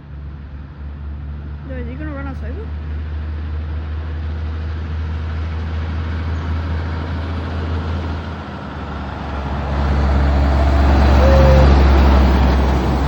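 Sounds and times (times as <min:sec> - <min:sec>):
heavy truck driving by: 0:02.7 - 0:13.0.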